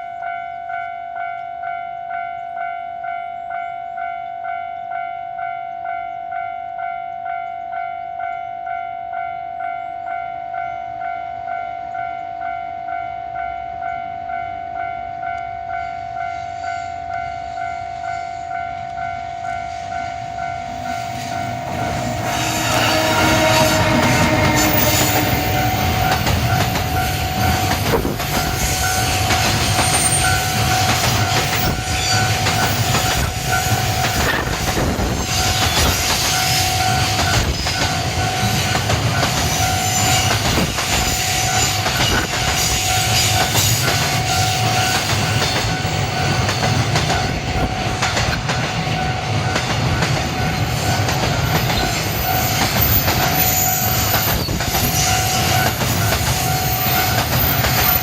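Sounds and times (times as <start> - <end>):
crossing alarm ringing: 0.0 - 58.0
train wheels rumbling: 14.8 - 58.0
wheels clacking over rail joints: 19.9 - 58.0.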